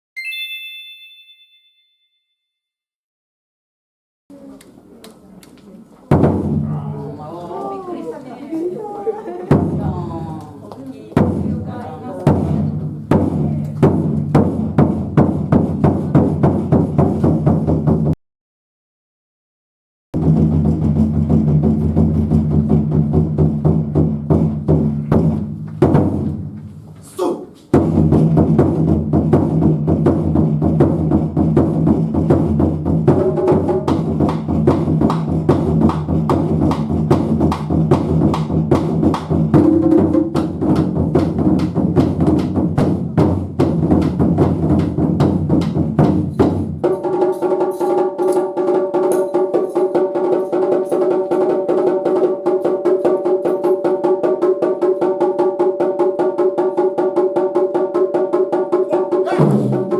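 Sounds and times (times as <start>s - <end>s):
higher-pitched rapid drum strikes: 6.1s - 7.0s, 9.5s - 10.2s, 11.1s - 18.2s, 20.2s - 26.5s, 27.2s - 59.9s
taiko drums: 6.1s - 7.1s, 9.3s - 10.4s, 11.1s - 18.2s, 20.2s - 26.6s, 27.7s - 59.9s.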